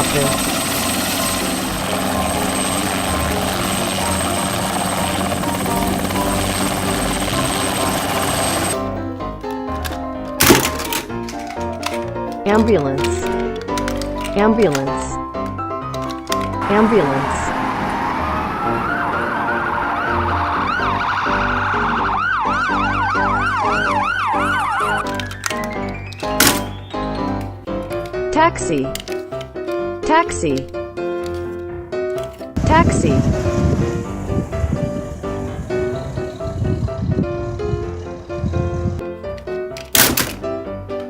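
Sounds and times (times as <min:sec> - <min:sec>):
ambulance siren wailing: 0:00.0 - 0:08.8, 0:16.6 - 0:27.1
helicopter rotor and engine: 0:00.0 - 0:08.9, 0:32.6 - 0:39.0.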